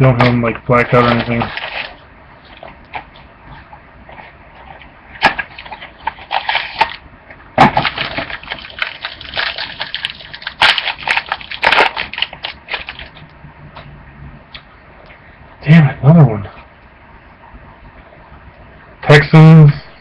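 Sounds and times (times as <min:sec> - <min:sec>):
card wrappers crinkling: 0:00.9 - 0:02.7, 0:05.3 - 0:07.0, 0:07.8 - 0:13.2
sharp clicks and crackles: 0:07.8 - 0:13.4.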